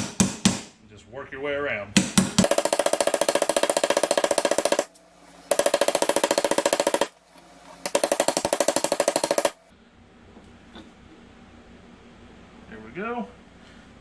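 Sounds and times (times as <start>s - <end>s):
rapid hammer blows on metal: 2.0s - 9.6s.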